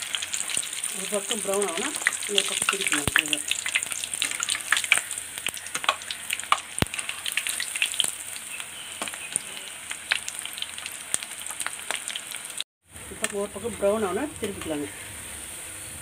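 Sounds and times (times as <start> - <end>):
sharp crackling pops: 0.0 - 12.3
batter deep-frying in oil: 0.0 - 16.0.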